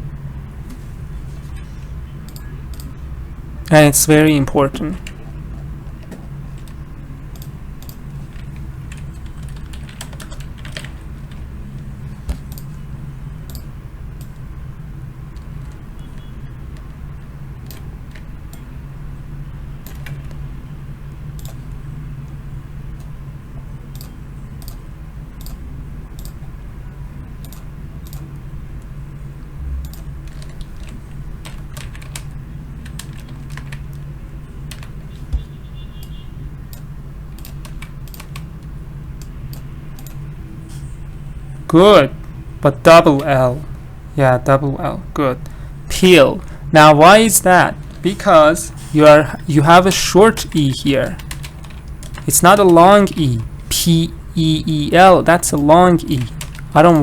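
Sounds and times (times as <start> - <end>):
steady low hum: 36.4 - 57.0.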